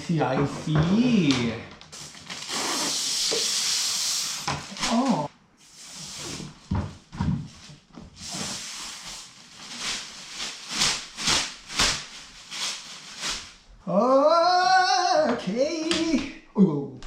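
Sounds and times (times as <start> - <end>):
packaging rustling: 1.8 - 3.0, 8.2 - 13.6
person humming: 4.7 - 5.3.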